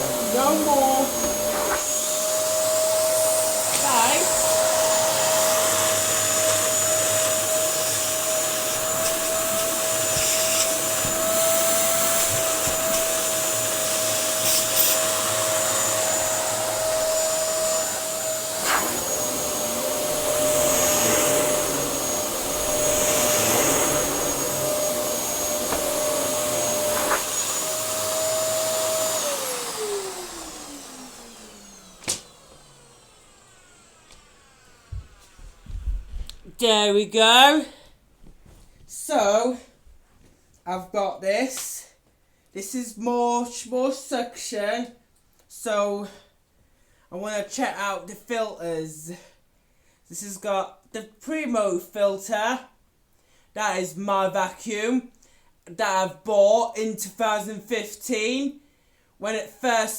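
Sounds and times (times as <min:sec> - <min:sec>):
vacuum cleaner motor whine: 0:00.0 - 0:36.4.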